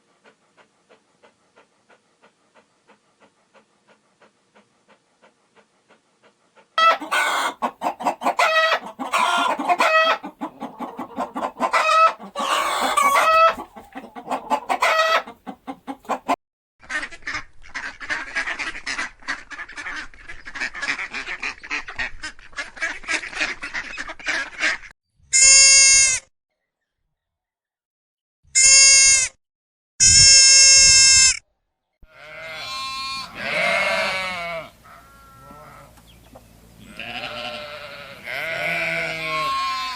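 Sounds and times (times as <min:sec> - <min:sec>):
chickens clucking: 0:00.2 - 0:24.8, 0:35.4 - 0:37.2.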